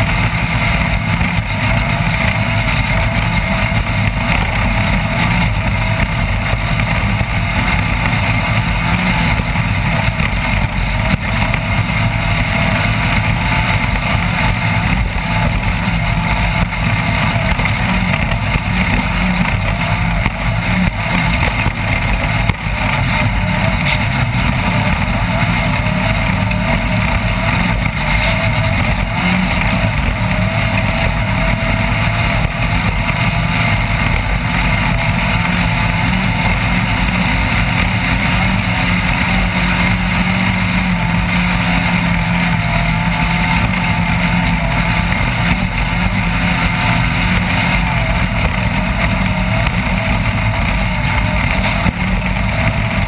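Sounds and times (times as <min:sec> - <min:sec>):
engine running hard: 0:00.0 - 0:53.0.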